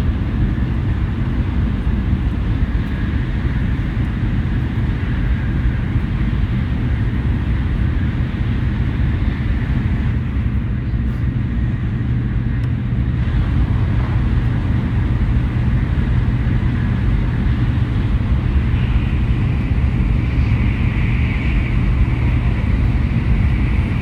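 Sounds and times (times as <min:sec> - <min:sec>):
train low rumble: 0:00.0 - 0:24.0
high train hiss: 0:04.9 - 0:24.0.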